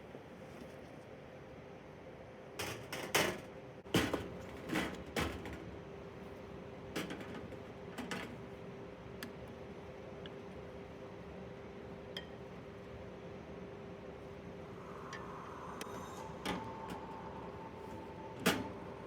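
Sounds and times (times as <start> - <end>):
faint steady hum: 8.2 - 19.0.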